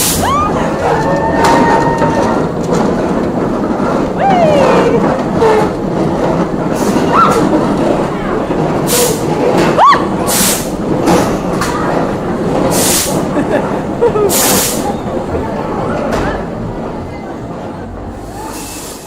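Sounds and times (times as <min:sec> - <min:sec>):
crowd noise: 0:00.0 - 0:19.0
ride machinery noise: 0:00.0 - 0:19.0
hissing blasts of air: 0:10.2 - 0:10.8, 0:12.7 - 0:13.3, 0:14.3 - 0:14.9, 0:18.2 - 0:19.0.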